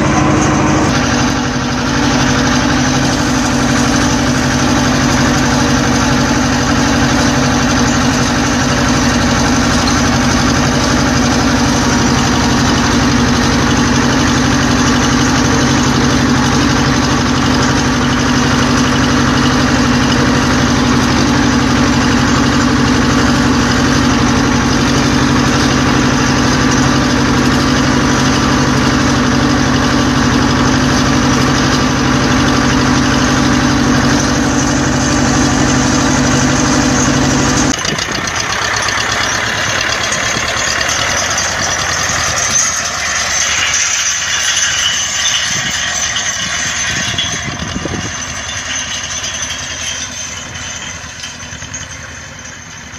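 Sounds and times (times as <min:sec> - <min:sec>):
tractor diesel engine running: 0:00.0 - 0:52.9.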